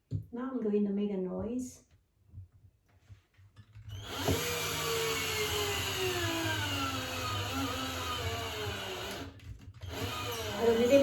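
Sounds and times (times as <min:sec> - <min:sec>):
cordless drill motor whine: 0:03.9 - 0:11.0.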